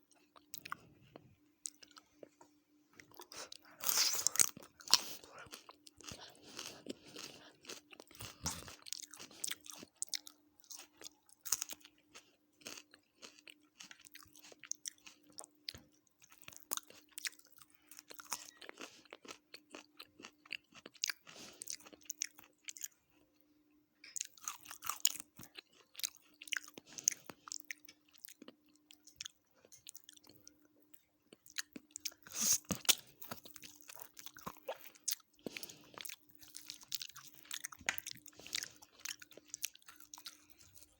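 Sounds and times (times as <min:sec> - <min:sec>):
wet chewing and crunching: 0:03.0 - 0:23.2, 0:24.2 - 0:40.9.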